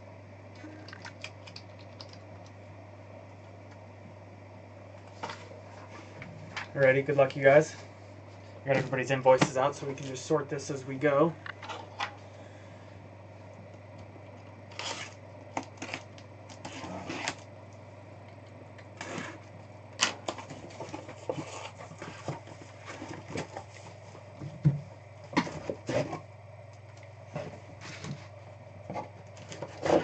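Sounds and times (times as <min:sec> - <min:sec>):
steady low hum: 0:00.0 - 0:30.0
card boxes and papers handled: 0:18.9 - 0:26.2, 0:27.3 - 0:28.4, 0:29.0 - 0:30.0.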